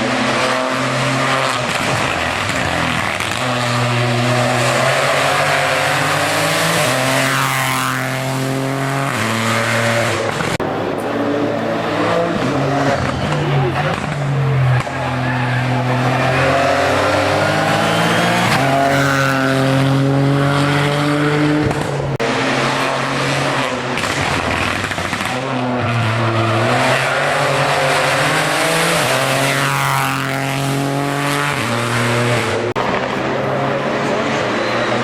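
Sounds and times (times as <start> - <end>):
race car engine revving: 0.0 - 35.0.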